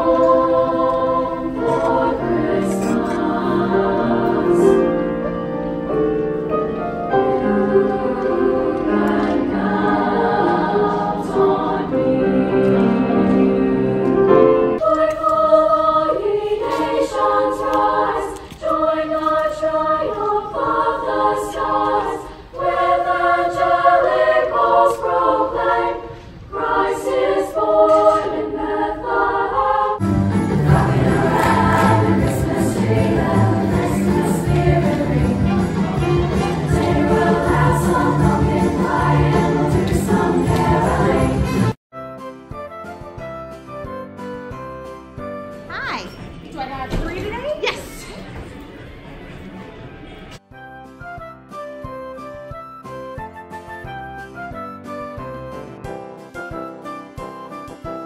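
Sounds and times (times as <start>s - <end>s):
choir singing: 0.0s - 6.0s, 7.0s - 41.8s
other music: 0.0s - 46.3s.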